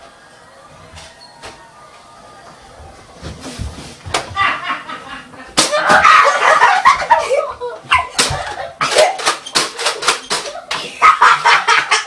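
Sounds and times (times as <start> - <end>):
people laughing and yelling: 4.2 - 9.3, 10.4 - 12.0
foam dart blasters clacking: 8.0 - 10.9.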